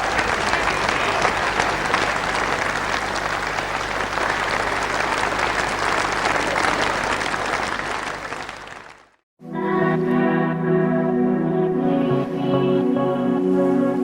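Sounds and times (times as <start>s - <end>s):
audience applauding: 0.0s - 9.2s.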